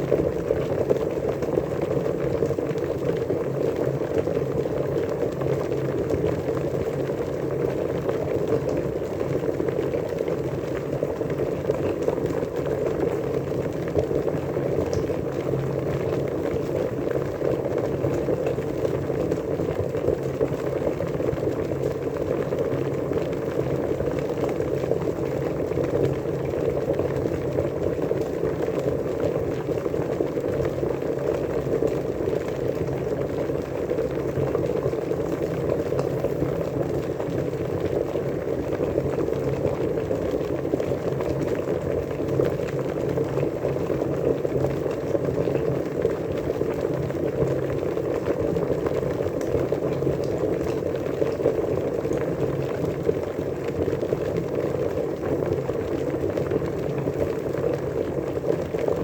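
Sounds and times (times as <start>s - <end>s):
water boiling: 0.0s - 59.0s.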